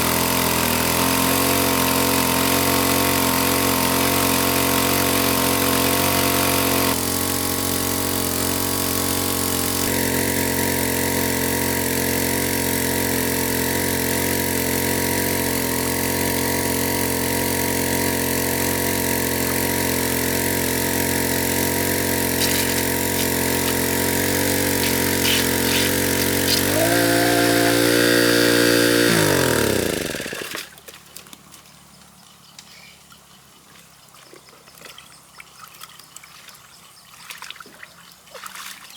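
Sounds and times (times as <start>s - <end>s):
small engine running: 0.0s - 30.8s
trickling water: 33.6s - 38.9s.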